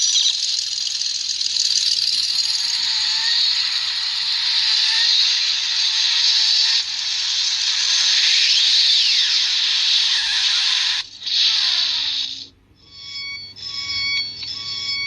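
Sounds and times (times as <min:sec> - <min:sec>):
electronic rushing hiss: 0:02.5 - 0:12.5
electronic beeping: 0:12.8 - 0:15.0.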